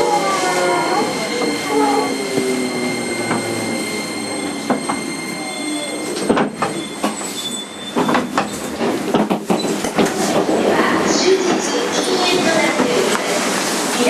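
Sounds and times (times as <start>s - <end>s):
train wheel and rail rumble: 0.0s - 14.0s
wheels clacking and knocking: 8.0s - 10.6s.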